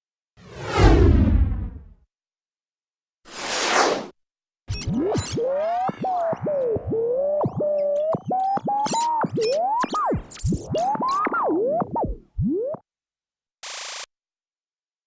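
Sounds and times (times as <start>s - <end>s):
swooping electronic tone: 4.8s - 12.8s.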